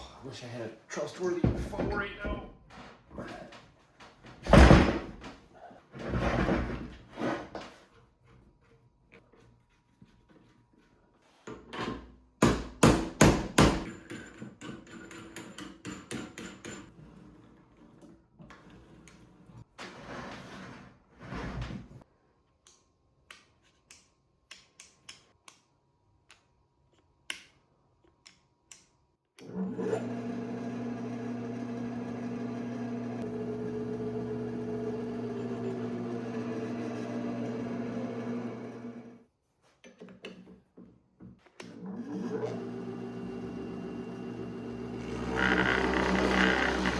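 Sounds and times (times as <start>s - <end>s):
motor humming: 42.7s - 46.9s.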